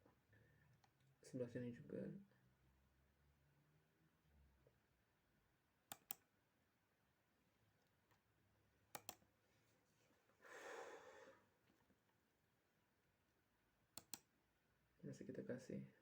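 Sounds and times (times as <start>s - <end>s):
mouse double-clicks: 5.9s - 6.2s, 14.0s - 14.3s
person exhaling: 10.4s - 11.5s.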